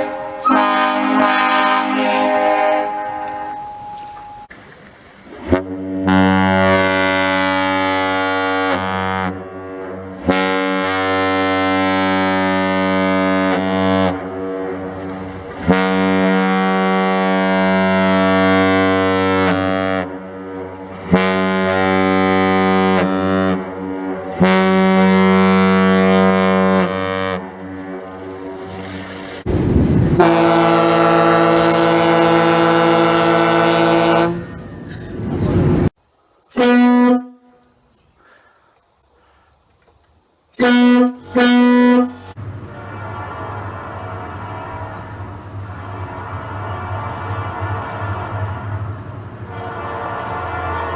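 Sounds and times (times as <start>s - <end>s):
deep ship horn blasts: 0.0s - 4.5s, 6.0s - 28.9s, 30.2s - 34.5s, 36.6s - 37.7s, 40.6s - 42.3s, 49.5s - 50.9s
higher bright horn blast: 0.0s - 4.5s.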